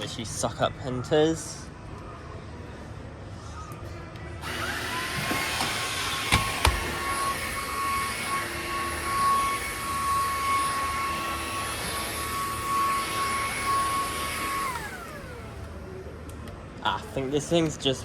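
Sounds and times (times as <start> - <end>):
vacuum cleaner motor whining: 4.4 - 15.9.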